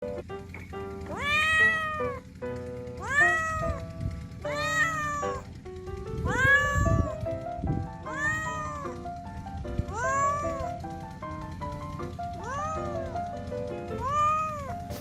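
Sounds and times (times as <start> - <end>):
cat meowing loudly: 1.1 - 2.2, 3.0 - 3.8, 4.4 - 5.5, 6.3 - 7.2, 8.0 - 9.0, 9.9 - 10.7, 12.4 - 13.0, 14.0 - 14.7.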